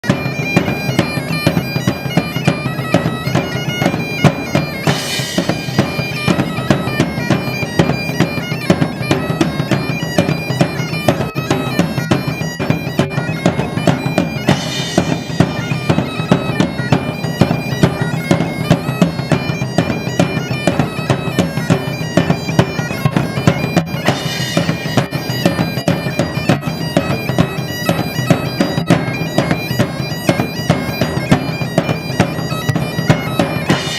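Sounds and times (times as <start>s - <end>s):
fast pipe melody: 0.0s - 33.9s
quick drum beat: 0.0s - 33.9s
cymbal crash: 4.9s - 5.9s, 33.7s - 33.9s.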